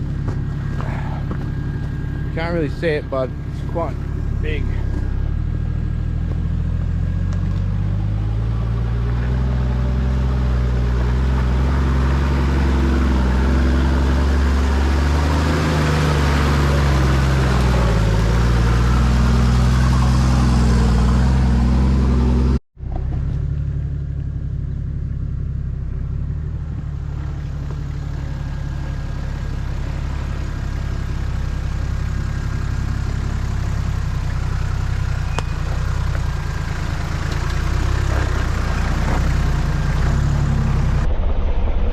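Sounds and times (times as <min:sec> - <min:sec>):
tyres on gravel: 0:00.0 - 0:06.5, 0:26.6 - 0:41.0
diesel engine running at low revs: 0:00.0 - 0:41.3.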